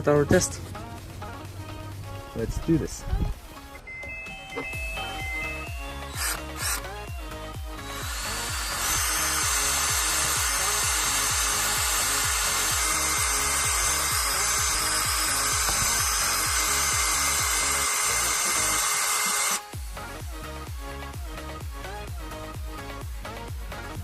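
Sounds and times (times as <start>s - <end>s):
background music with beat: 0.0s - 24.0s
cordless drill boring into phone: 5.0s - 19.7s.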